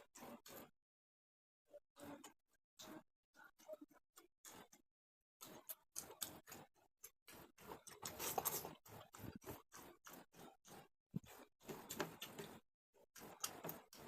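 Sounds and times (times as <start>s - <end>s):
chewing and handling food: 5.4s - 14.0s.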